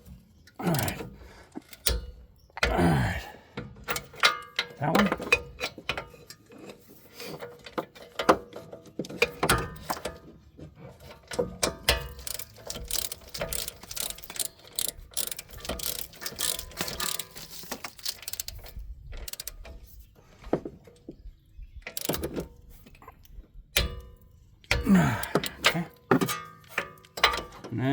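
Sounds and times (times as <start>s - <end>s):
socket ratchet clicking: 0.7s - 1.0s, 11.8s - 19.6s, 21.9s - 22.5s.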